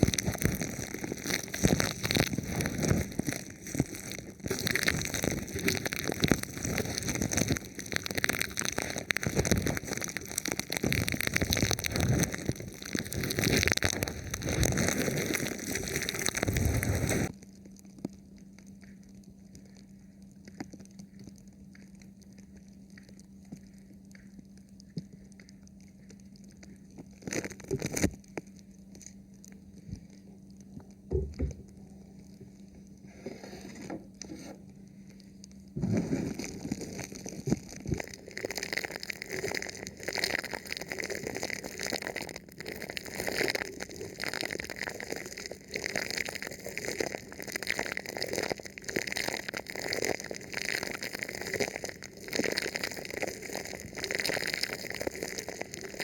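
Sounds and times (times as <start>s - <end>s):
faint steady hum: 0.0s - 56.0s
plastic film crinkling on microphone: 0.0s - 56.0s.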